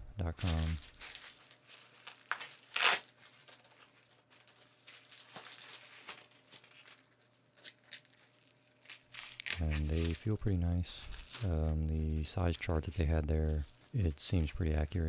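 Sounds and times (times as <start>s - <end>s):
gloves rustling and crinkling: 0.2s - 15.0s.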